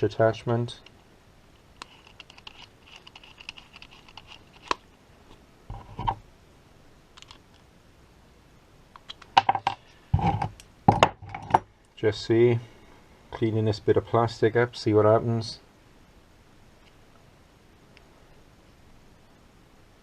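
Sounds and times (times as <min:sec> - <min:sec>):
metal and plastic parts clicking: 0:01.8 - 0:04.8.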